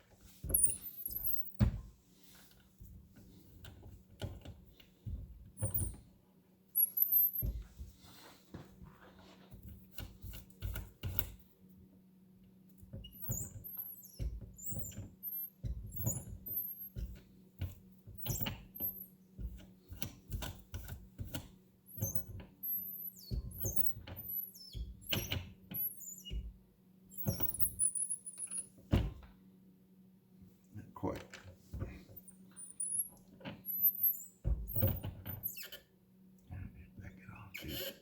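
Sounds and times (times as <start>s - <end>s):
high-pitched squeaks: 0.6s - 1.6s, 6.8s - 7.4s, 22.0s - 26.3s, 27.2s - 28.8s, 32.5s - 34.4s.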